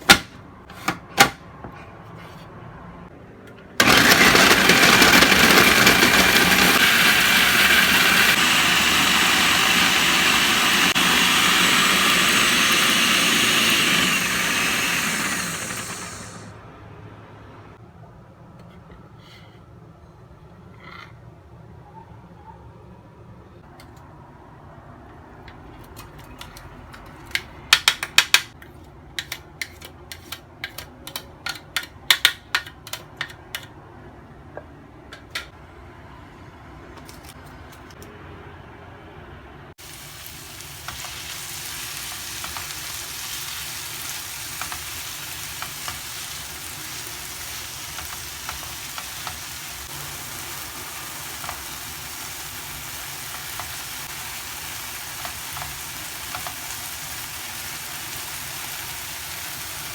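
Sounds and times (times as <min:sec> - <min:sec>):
food sizzling in hot oil: 0:06.6 - 0:16.5, 0:39.8 - 0:59.9.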